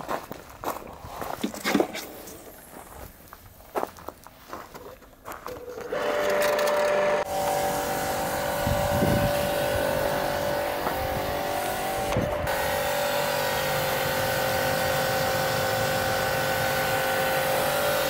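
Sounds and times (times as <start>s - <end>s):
pressure washer whining: 5.9s - 18.0s
water spray hissing: 7.3s - 18.0s.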